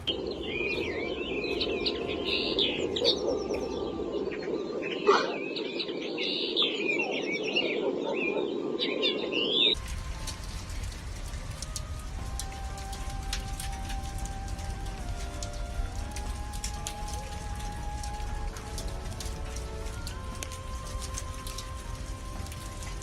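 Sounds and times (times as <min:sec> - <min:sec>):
small birds chirping: 0:00.0 - 0:23.0
light ticks: 0:09.8 - 0:23.0
steady low hiss: 0:09.8 - 0:23.0.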